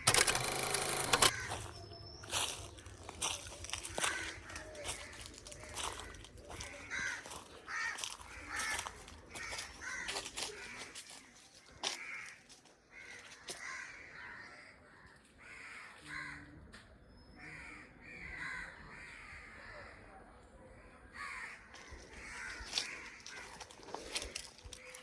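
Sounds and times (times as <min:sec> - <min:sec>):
sharp clicks: 0:00.0 - 0:01.4
birds calling: 0:00.0 - 0:16.5, 0:21.2 - 0:25.0.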